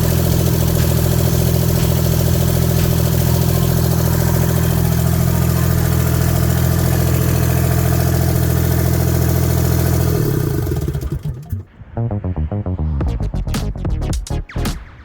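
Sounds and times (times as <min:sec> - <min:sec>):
electronic music: 0:00.0 - 0:08.1, 0:11.3 - 0:15.0
diesel engine running: 0:00.0 - 0:11.8.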